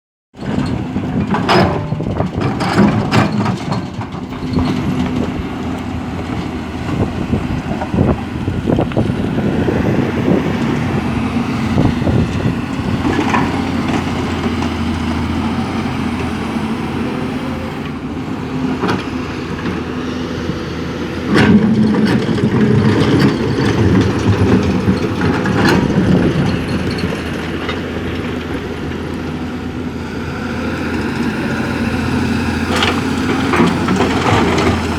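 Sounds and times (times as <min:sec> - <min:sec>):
diesel engine running: 0:00.4 - 0:34.9.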